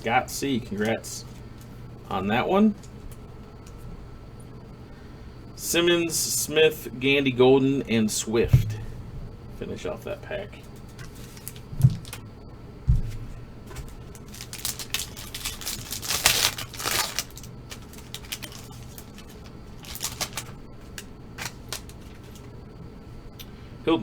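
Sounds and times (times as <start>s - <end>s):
dull thumps on table: 8.4s - 9.3s, 12.9s - 13.9s
foil pack crinkling: 10.4s - 12.3s, 12.9s - 22.6s.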